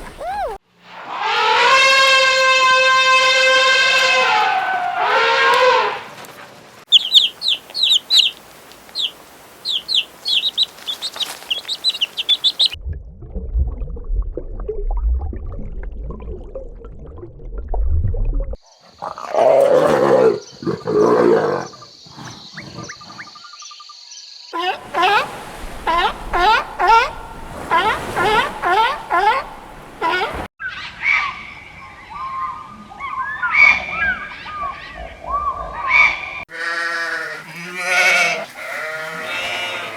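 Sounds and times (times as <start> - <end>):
bird chirping: 0.0 - 0.6, 6.9 - 12.8
loud animal calls: 0.0 - 6.1, 24.6 - 30.5.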